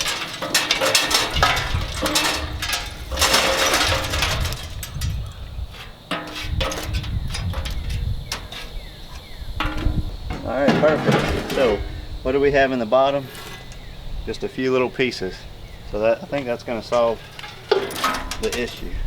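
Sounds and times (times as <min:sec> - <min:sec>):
charcoal rattling against metal: 0:00.0 - 0:19.0.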